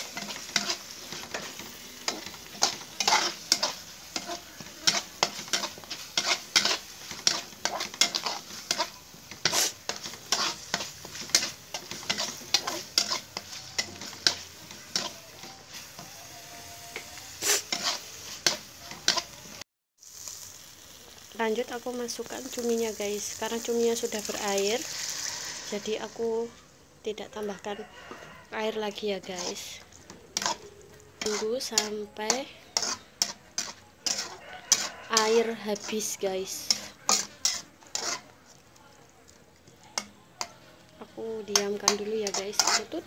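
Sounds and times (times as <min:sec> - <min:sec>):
utensil scraping a pan: 0:00.0 - 0:19.6, 0:29.2 - 0:38.6, 0:41.5 - 0:43.0
paste sizzling in hot oil: 0:00.0 - 0:43.0.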